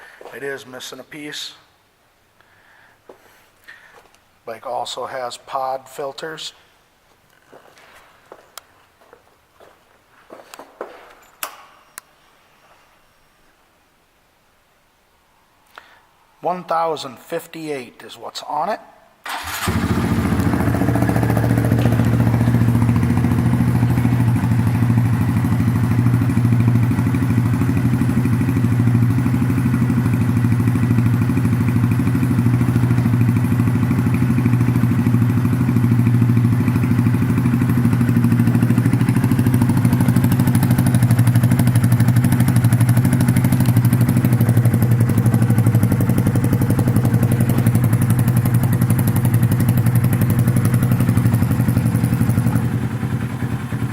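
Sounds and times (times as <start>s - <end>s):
motorcycle engine idling: 19.3s - 53.9s.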